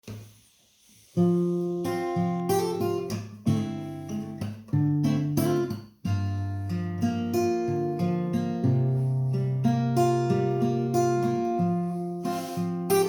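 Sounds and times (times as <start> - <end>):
acoustic guitar chords: 1.2 - 13.0.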